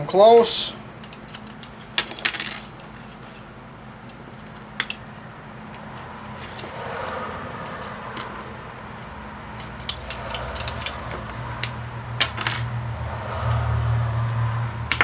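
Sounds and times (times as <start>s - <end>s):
metal parts clinking: 1.0s - 3.4s, 9.6s - 12.8s.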